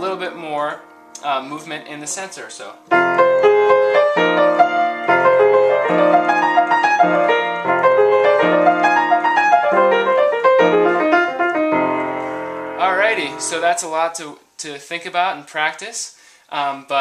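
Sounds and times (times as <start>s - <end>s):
jazz piano playing: 0.0s - 14.0s.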